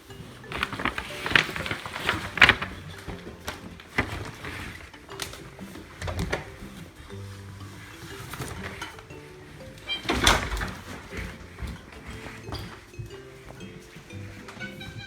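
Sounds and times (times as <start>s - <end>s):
gentle background music: 0.0s - 15.0s.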